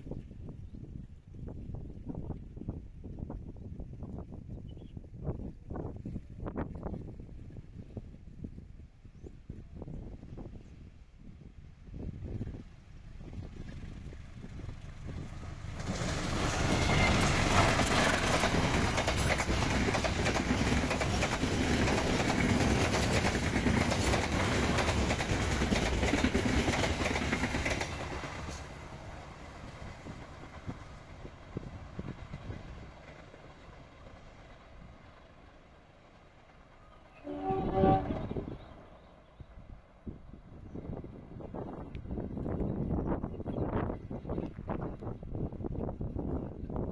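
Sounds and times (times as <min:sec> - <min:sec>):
train wheels clattering on rails: 0:13.2 - 0:38.2.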